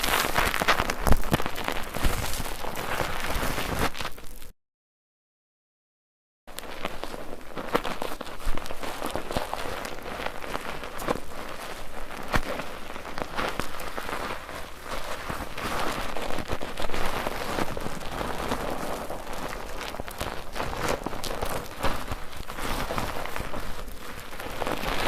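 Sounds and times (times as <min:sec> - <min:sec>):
small clicks and pops: 0:00.0 - 0:03.2
wet squishing of soap foam: 0:06.8 - 0:25.0.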